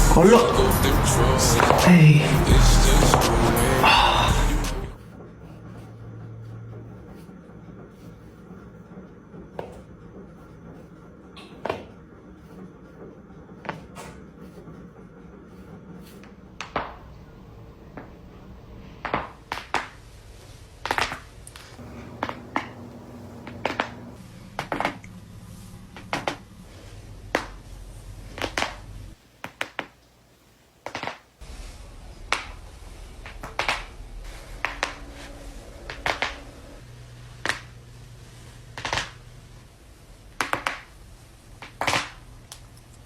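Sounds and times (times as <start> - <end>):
low steady hum: 21.8 - 29.2, 31.4 - 41.6.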